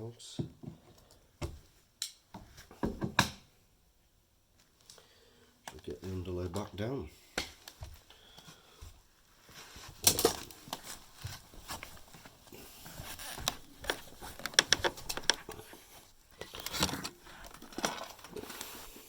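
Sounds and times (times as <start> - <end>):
carpet underlay rustling: 7.7 - 19.0.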